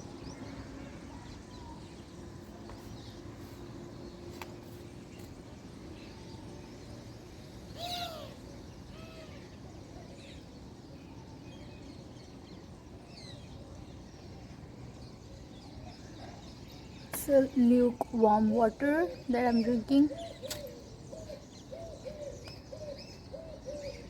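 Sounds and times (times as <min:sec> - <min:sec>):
outdoor background hiss: 0:00.0 - 0:24.0
faint bird chirps: 0:05.2 - 0:24.0
birds calling: 0:06.0 - 0:14.4, 0:15.0 - 0:24.0.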